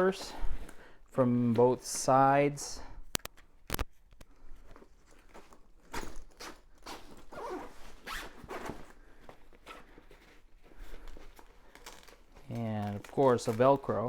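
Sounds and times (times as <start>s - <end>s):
bag zipper rasping: 6.1s - 8.9s.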